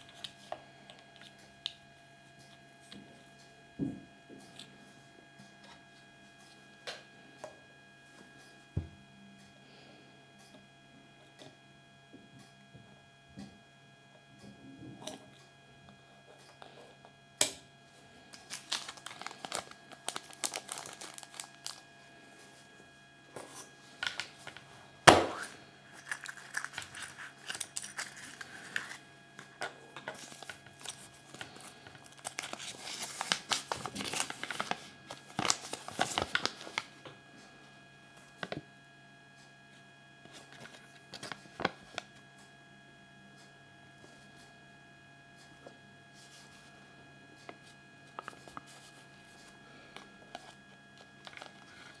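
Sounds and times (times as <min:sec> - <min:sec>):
foil crinkling and tearing: 0:18.3 - 0:21.9, 0:23.6 - 0:37.1, 0:50.4 - 0:52.0.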